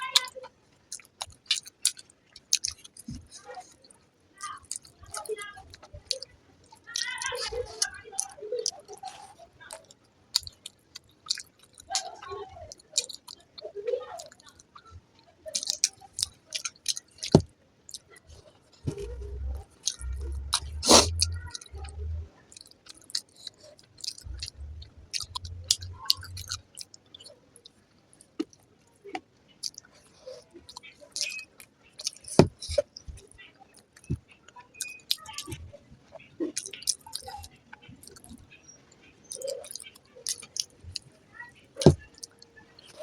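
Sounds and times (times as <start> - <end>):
wet chewing and lip smacks: 0.2 - 41.1, 41.8 - 43.0
muffled low thumps: 18.9 - 22.3, 24.3 - 26.4.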